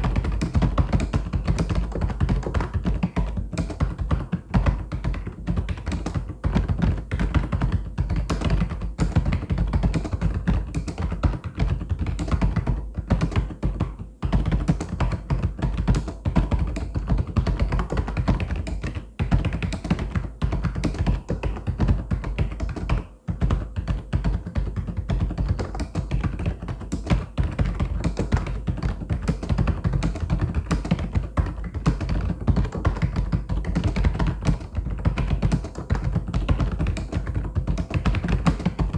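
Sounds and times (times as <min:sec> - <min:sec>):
mechanical keyboard typing: 0:14.3 - 0:38.9.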